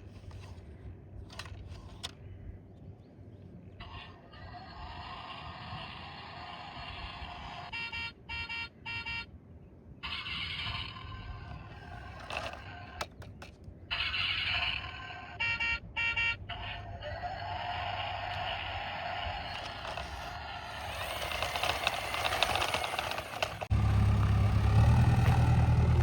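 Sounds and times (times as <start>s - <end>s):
electronic toy engine sound: 3.8s - 9.3s, 10.0s - 13.2s, 13.9s - 23.8s.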